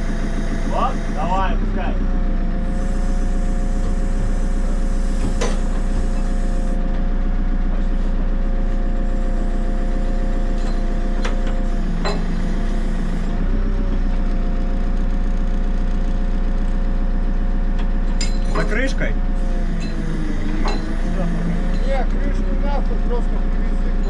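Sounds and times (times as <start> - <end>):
steady whine: 0.0 - 6.8, 8.8 - 13.4, 18.1 - 24.0
diesel engine running: 0.0 - 24.0.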